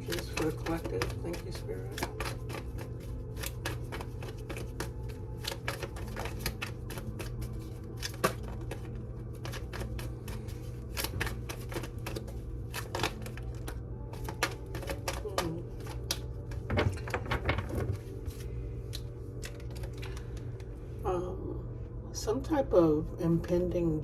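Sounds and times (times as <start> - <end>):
cards being shuffled: 0.0 - 20.8.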